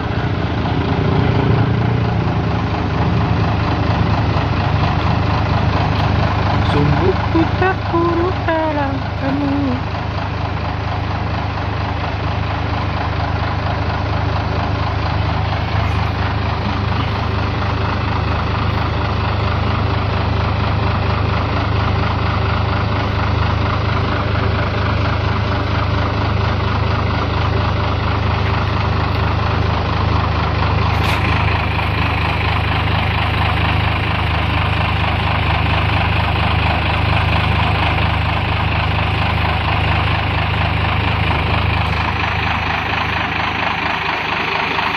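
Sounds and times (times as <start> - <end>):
vehicle engine idling: 0.0 - 44.9.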